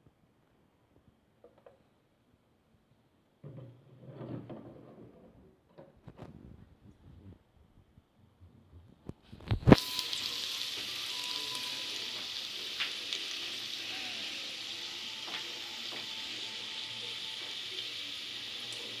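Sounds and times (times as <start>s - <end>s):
garlic sizzling in oil: 9.5s - 19.0s
oil popping: 9.5s - 19.0s.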